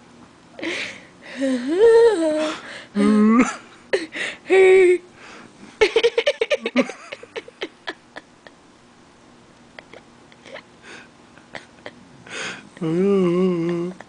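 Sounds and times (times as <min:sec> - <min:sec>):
hearty human laughter: 0:05.8 - 0:08.6.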